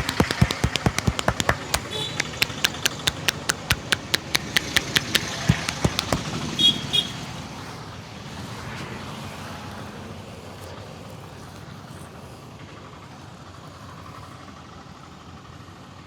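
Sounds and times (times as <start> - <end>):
hands slapping on a head: 0.0 - 6.4
street traffic noise: 0.0 - 13.0.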